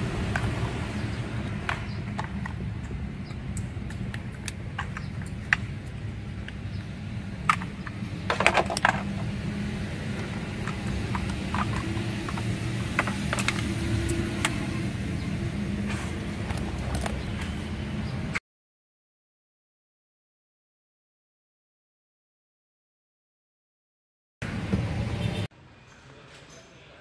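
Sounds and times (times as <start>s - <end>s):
handling clatter: 10.2s - 13.8s.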